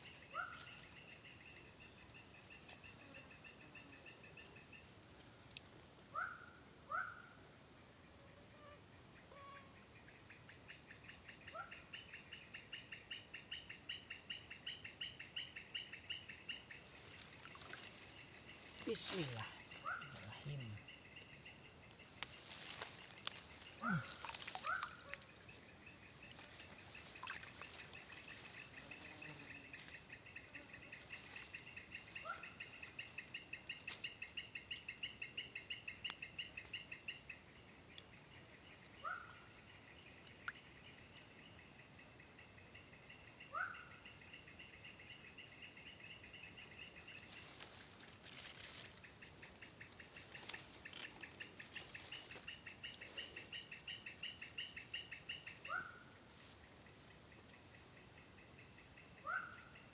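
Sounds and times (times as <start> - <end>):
insect trilling: 12.8 - 39.3.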